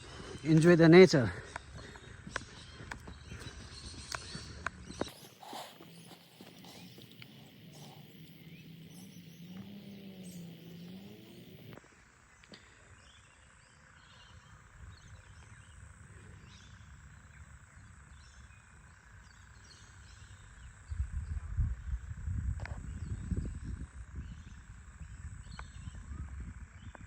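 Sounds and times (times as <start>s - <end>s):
short bird calls: 1.5s - 11.8s
faint high hum: 4.4s - 11.8s.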